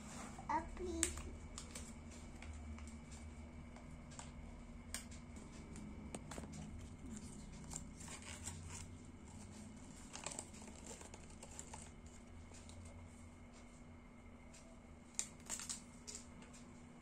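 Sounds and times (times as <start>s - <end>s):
packaging crinkling and tearing: 10.0s - 12.0s, 15.1s - 16.2s.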